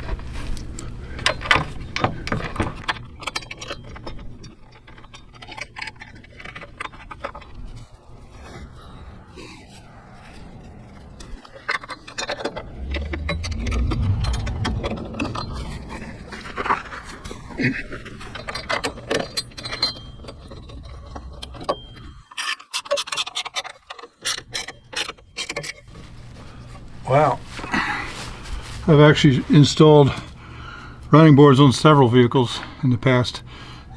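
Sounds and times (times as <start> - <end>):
low rumble: 7.8 - 18.5.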